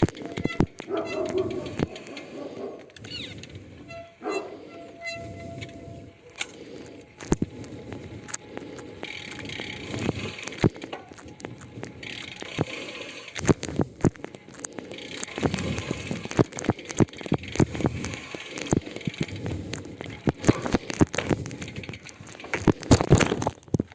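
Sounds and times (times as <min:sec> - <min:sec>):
sharp clicks from bicycle wheel: 0:00.0 - 0:23.9
hissing brake rub: 0:00.1 - 0:11.5.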